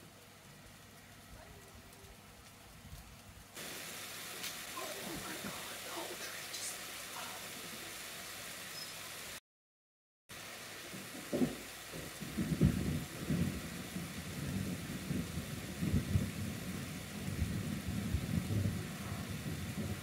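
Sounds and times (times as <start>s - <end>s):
steady hiss: 0.0s - 9.4s, 10.3s - 20.0s
rolling thunder: 10.8s - 20.0s.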